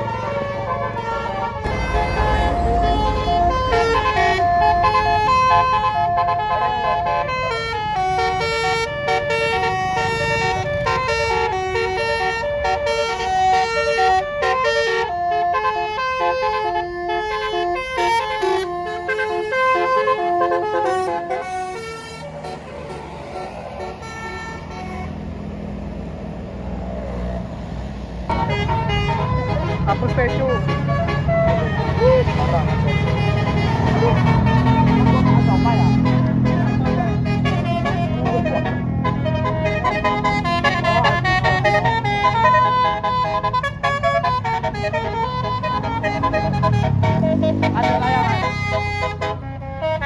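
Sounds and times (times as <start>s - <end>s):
musical bus air horn melody: 0.0s - 25.7s, 28.3s - 50.0s
bus engine rumble: 0.0s - 50.0s.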